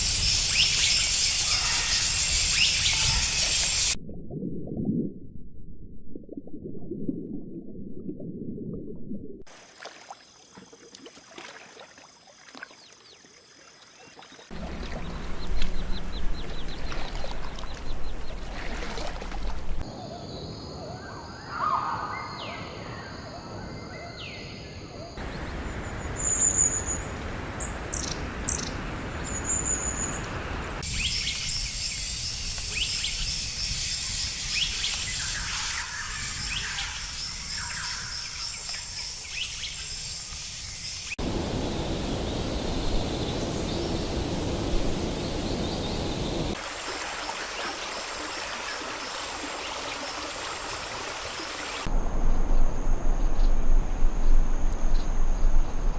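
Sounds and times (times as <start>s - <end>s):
high insect drones: 0.0s - 4.0s, 27.9s - 46.9s
loud noisy hiss: 41.2s - 46.6s.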